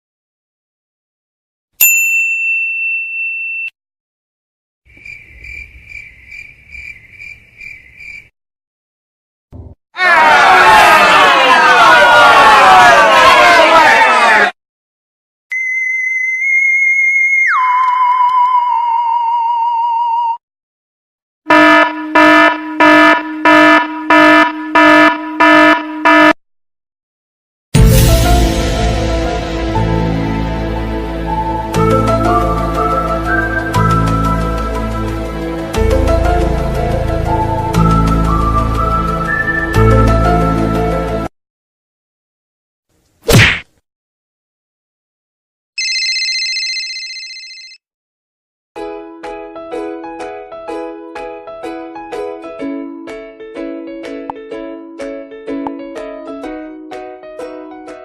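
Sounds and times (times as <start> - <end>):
bell ding: 1.8 - 3.8
electronic alarm buzzer pulsing: 21.5 - 26.4.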